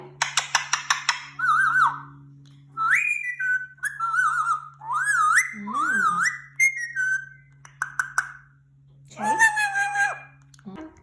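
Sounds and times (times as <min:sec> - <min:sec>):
steady low hum: 0:00.0 - 0:11.0
parakeet whistling: 0:00.4 - 0:02.2, 0:02.8 - 0:08.6, 0:09.2 - 0:10.4.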